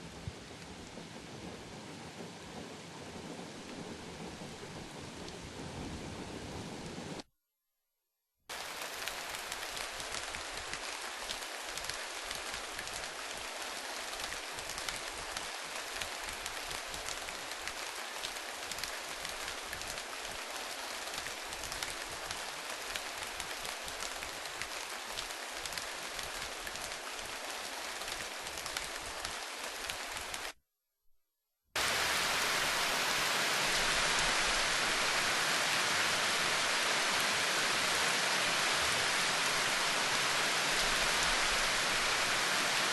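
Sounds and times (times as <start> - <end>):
rain hissing: 0.0 - 7.2, 8.5 - 30.6, 31.8 - 42.9
smooth loud rain: 0.0 - 7.3, 8.5 - 30.6, 31.8 - 42.9.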